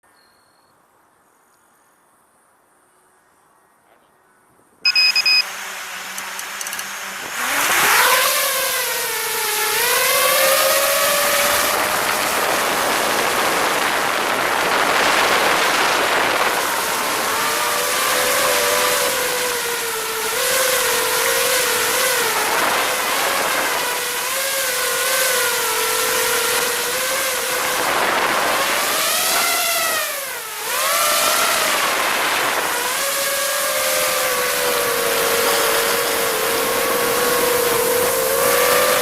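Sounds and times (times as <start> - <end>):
loud electronic beep: 4.8 - 5.5
drone motors whining: 4.8 - 39.0.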